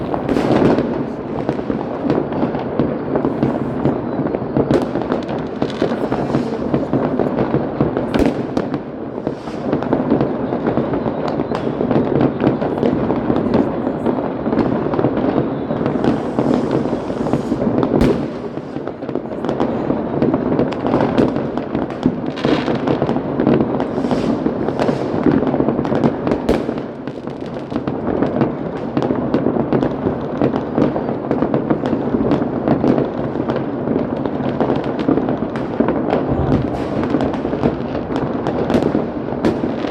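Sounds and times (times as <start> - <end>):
fireworks bangs and crackling: 0.0 - 39.9
sharp firework reports: 3.0 - 19.0, 23.8 - 25.3, 35.0 - 39.9.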